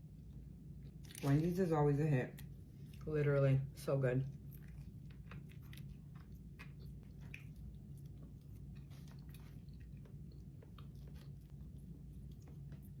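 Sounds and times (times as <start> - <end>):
chewing and mouth sounds: 0.0 - 3.4, 4.2 - 13.0
low steady hum: 0.0 - 13.0.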